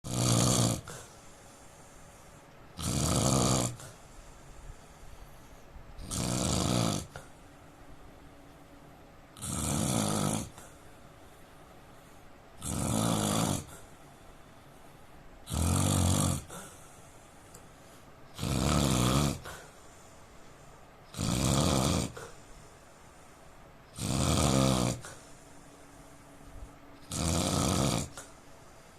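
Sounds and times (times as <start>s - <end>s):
man snoring: 0.0s - 1.2s, 2.8s - 4.0s, 6.0s - 7.3s, 9.4s - 10.8s, 12.6s - 13.9s, 15.4s - 16.9s, 18.3s - 19.7s, 21.1s - 22.4s, 23.9s - 25.3s, 27.0s - 28.4s.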